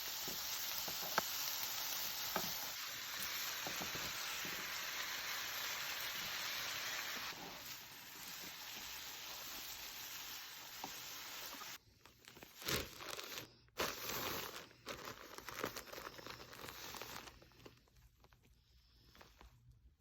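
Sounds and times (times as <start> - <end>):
steady hiss: 0.0 - 11.8
crinkling and tearing: 11.8 - 20.0.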